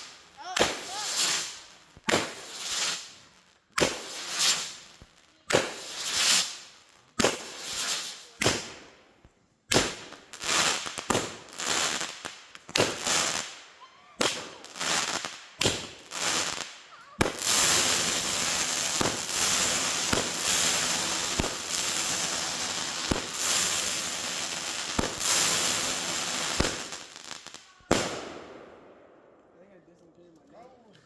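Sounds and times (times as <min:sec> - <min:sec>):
firework shots banging: 0:00.0 - 0:03.1, 0:03.8 - 0:04.8, 0:07.2 - 0:09.0, 0:12.1 - 0:13.6, 0:14.2 - 0:29.4
firework crackling hiss: 0:00.0 - 0:09.0, 0:09.7 - 0:28.6.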